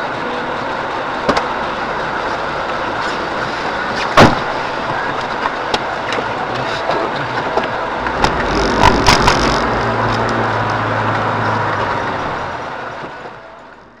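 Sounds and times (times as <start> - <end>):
road and wind noise: 0.0 - 14.0
low steady hum: 6.6 - 14.0.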